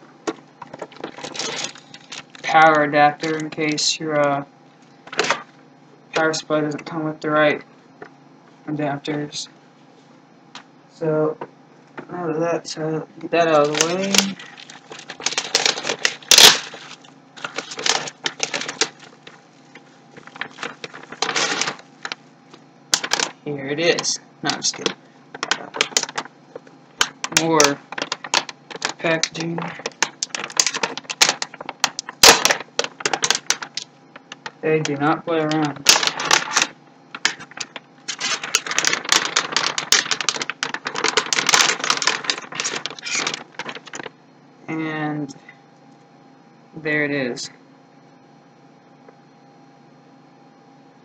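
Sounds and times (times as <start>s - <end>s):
packaging crinkling and rustling: 0.2s - 3.9s, 5.1s - 5.5s, 13.4s - 44.1s.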